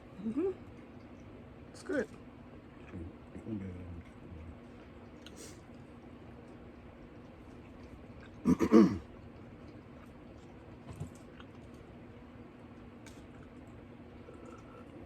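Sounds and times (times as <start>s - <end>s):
low steady hum: 0.0s - 15.0s
chewing: 4.0s - 12.0s, 12.7s - 15.0s.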